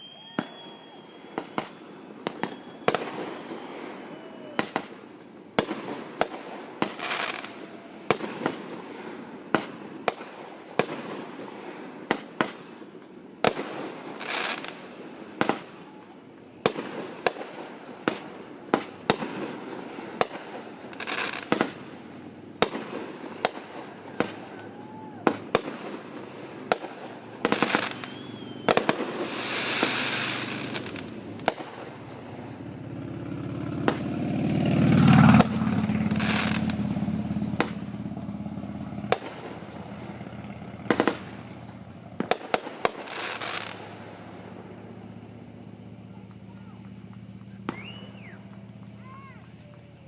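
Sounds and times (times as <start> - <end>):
crickets chirping: 0.0 - 50.0
fireworks banging: 0.0 - 50.0
fireworks crackling: 0.0 - 50.0.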